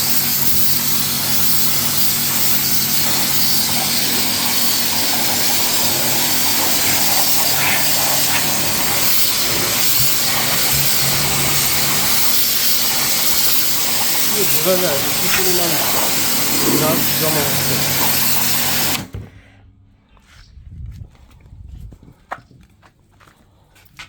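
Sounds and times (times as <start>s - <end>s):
water jet hissing on paving: 0.0s - 19.1s
pressure washer motor hum: 0.0s - 19.2s.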